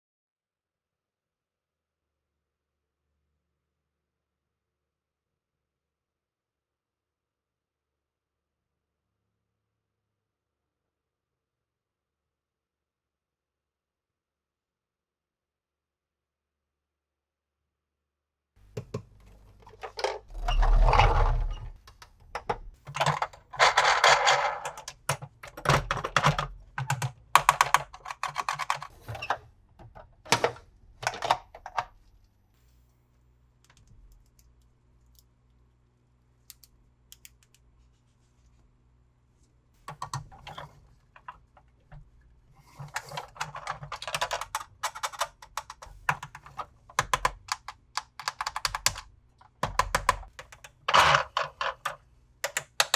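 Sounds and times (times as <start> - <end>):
hard plastic toys clicking: 18.8 - 28.9, 42.8 - 52.9.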